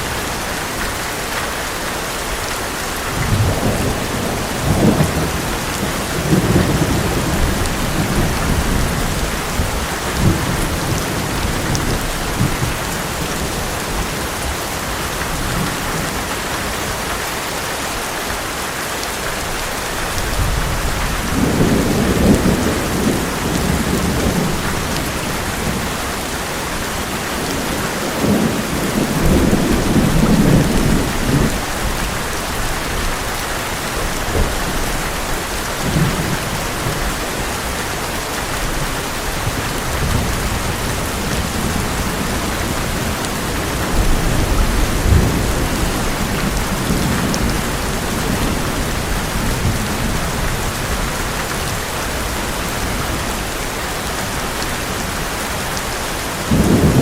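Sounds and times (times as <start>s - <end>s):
heavy rain on a metal roof: 0.0s - 57.0s
thunder rumbling: 2.9s - 14.6s, 20.1s - 53.1s, 56.3s - 57.0s.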